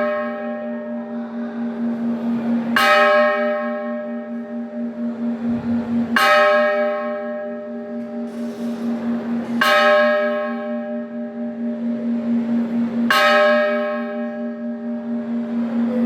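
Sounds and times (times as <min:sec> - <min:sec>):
temple bell ringing: 0:00.0 - 0:16.0
low wavering hum: 0:04.1 - 0:09.7, 0:14.1 - 0:16.0.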